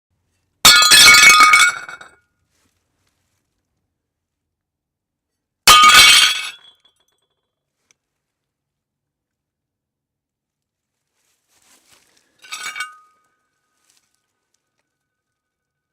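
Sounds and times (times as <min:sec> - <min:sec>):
ceramic plates smashing: 0:00.7 - 0:02.2, 0:05.7 - 0:06.8, 0:12.4 - 0:13.1
clinking shards: 0:05.7 - 0:07.2, 0:12.4 - 0:13.4.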